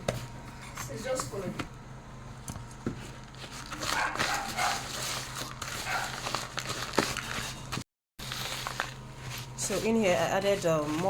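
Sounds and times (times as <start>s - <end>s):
bark-like sounds: 3.9s - 4.9s, 5.8s - 6.2s
paste being stirred in a bowl: 8.2s - 11.0s.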